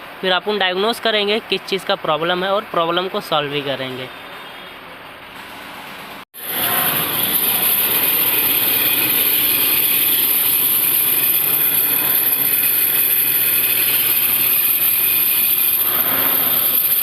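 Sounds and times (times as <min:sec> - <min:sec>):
belt drive grinding: 0:06.4 - 0:17.0.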